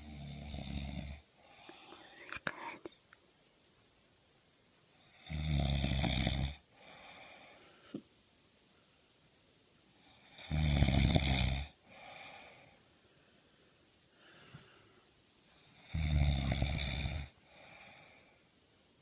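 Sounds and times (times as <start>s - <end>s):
loud buzzing snores: 0.0s - 1.2s, 5.2s - 7.0s, 10.2s - 12.5s, 15.8s - 18.1s
soft short breath: 12.0s - 15.2s.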